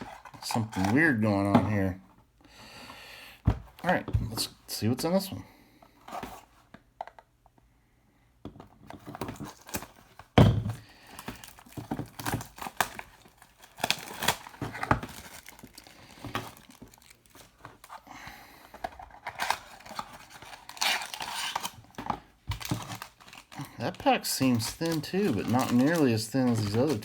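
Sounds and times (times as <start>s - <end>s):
cards clicking and rustling: 0.0s - 1.2s, 11.0s - 27.0s
wrapper tearing and crinkling: 9.2s - 10.1s, 11.0s - 18.0s, 19.1s - 27.0s.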